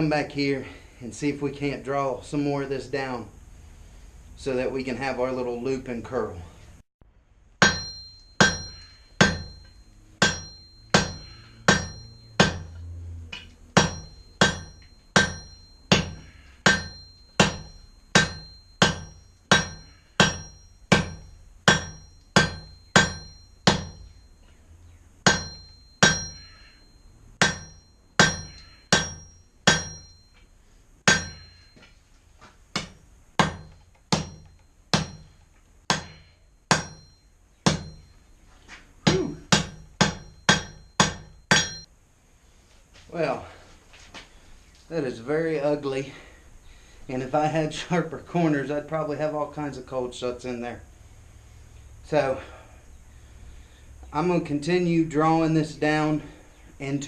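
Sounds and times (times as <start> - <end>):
hammer striking steel on anvil: 7.6 - 24.2, 25.2 - 32.0, 32.7 - 38.2, 39.0 - 41.9
high anvil ring: 7.6 - 32.1, 32.8 - 38.4, 39.1 - 41.9.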